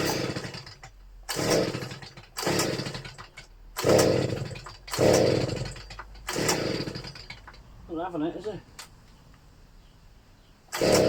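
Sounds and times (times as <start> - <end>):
pull-start rope cranking engine: 0.0 - 7.6, 10.7 - 11.0.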